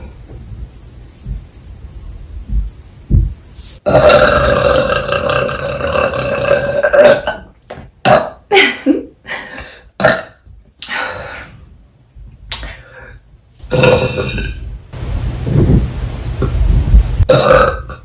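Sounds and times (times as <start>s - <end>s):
woman burping: 3.9s - 8.8s, 17.3s - 18.0s.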